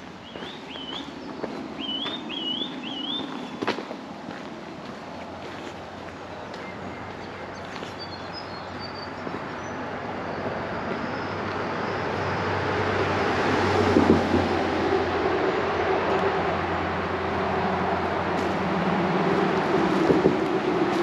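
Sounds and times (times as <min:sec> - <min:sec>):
vehicle passing: 0:00.0 - 0:21.0
high bird chirps: 0:00.3 - 0:03.6.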